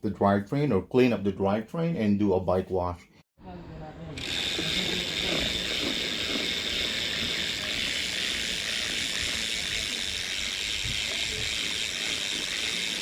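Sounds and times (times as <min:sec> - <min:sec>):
bicycle freehub ratcheting: 0:04.2 - 0:13.0.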